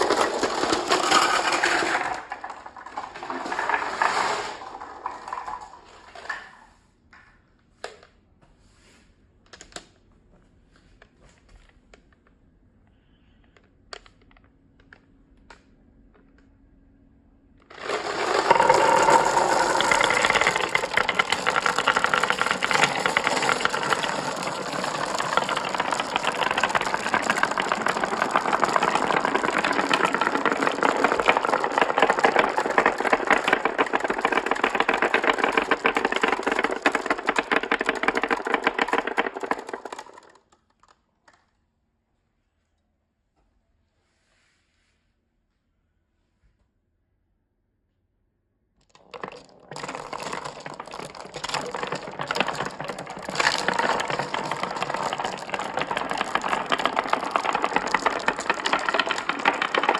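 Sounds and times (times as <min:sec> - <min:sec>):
marbles clattering down a track: 0:00.0 - 0:06.6, 0:17.7 - 0:41.0, 0:48.8 - 0:59.9.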